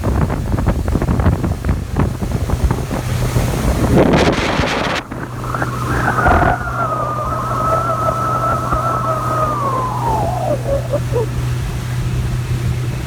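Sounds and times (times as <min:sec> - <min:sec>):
wind buffeting microphone: 0:00.0 - 0:12.2
water rushing along hull: 0:00.0 - 0:13.0
outboard engine humming: 0:01.6 - 0:13.0
rush of spray: 0:03.4 - 0:11.4.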